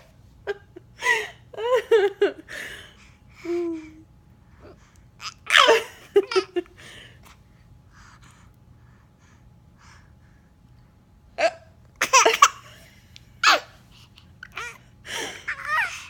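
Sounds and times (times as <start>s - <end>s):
soft breathing: 2.5s - 5.2s, 6.7s - 11.2s
person giggling: 5.6s - 7.0s.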